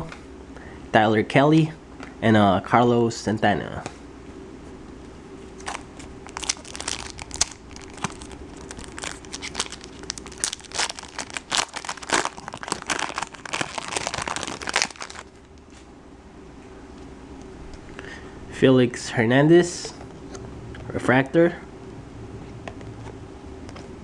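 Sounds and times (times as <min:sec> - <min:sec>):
foil wrapper crinkling: 0:05.6 - 0:15.7.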